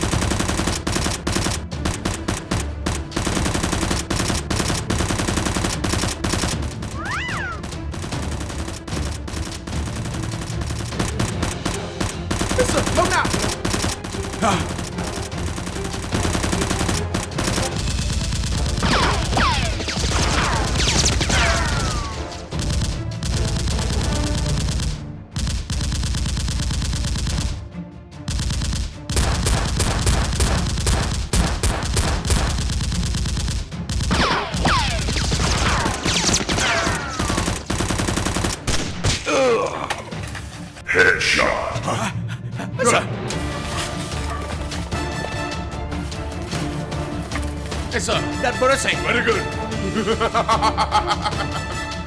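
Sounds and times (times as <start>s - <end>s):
rapid automatic gunfire: 0.0s - 27.6s, 28.3s - 39.0s.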